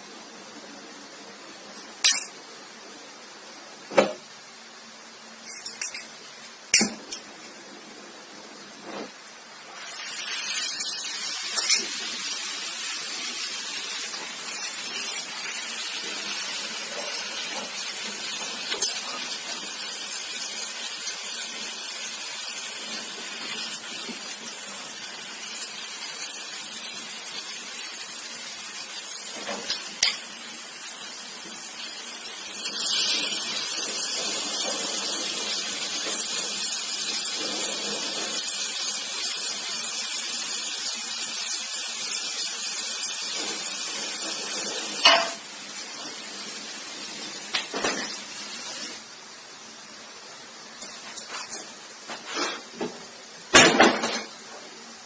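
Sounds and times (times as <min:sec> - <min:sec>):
brazing torch hissing: 0:07.6 - 0:49.4.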